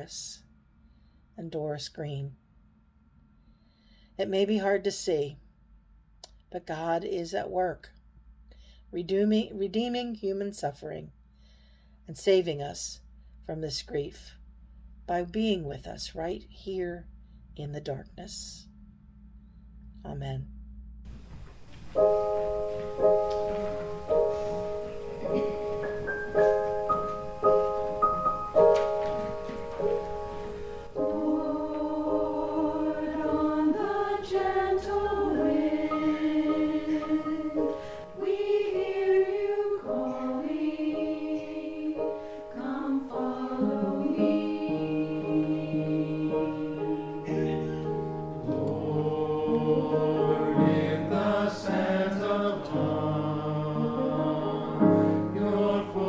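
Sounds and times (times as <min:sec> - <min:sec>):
piano chords: 0:21.1 - 0:56.0
choir singing a hymn: 0:21.2 - 0:56.0.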